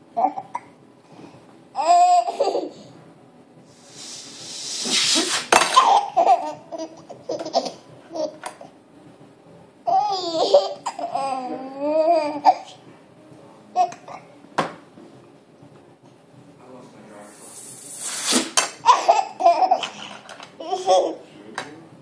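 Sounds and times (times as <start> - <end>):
baby laughing: 1.8 - 2.9, 5.6 - 8.7, 9.9 - 12.8, 13.8 - 14.2, 18.8 - 21.2.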